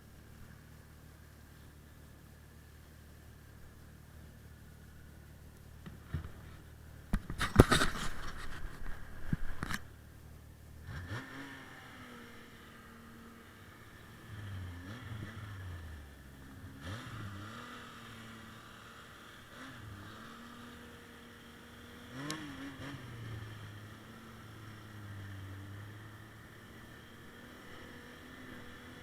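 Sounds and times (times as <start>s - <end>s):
snowmobile engine revving: 10.8s - 29.0s.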